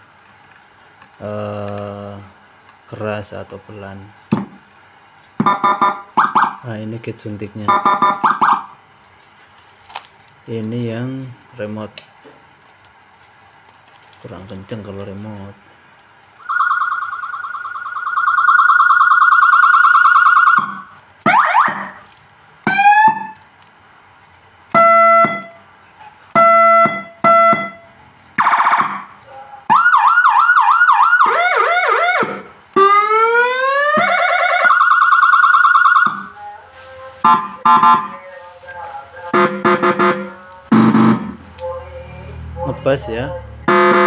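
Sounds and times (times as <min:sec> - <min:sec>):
electronic siren patterns: 0:05.4 - 0:06.7, 0:07.6 - 0:08.8, 0:16.4 - 0:22.0, 0:22.7 - 0:23.4, 0:24.7 - 0:25.6, 0:26.3 - 0:36.6, 0:37.2 - 0:38.2, 0:39.2 - 0:41.4, 0:43.5 - 0:44.0.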